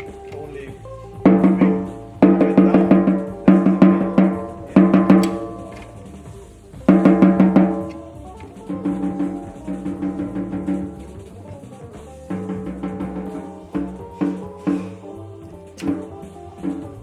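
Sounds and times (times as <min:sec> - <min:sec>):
drum taps ringing: 0:01.3 - 0:06.2, 0:06.9 - 0:10.9.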